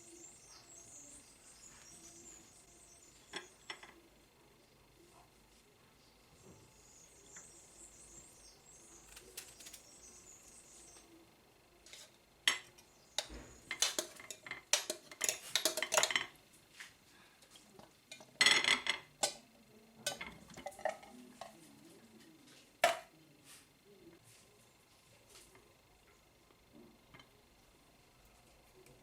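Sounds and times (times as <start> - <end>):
cutlery and dishes clinking: 11.9 - 16.4, 17.8 - 19.4, 20.0 - 21.6.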